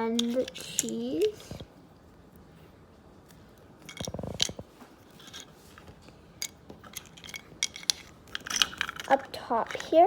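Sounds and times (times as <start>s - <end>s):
toy pieces rattling and scraping: 0.0s - 1.6s, 3.8s - 5.6s, 6.4s - 10.0s.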